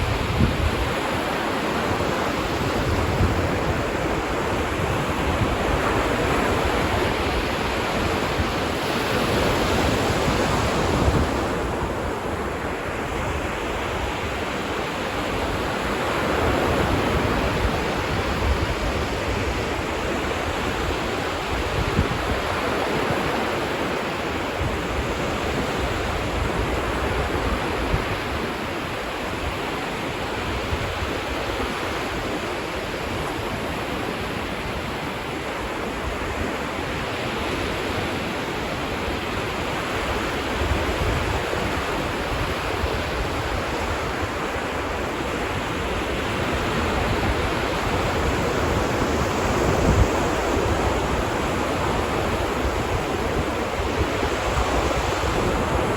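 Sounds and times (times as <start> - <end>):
ocean surf breaking on beach: 0.0 - 55.9
wind buffeting microphone: 0.0 - 55.9.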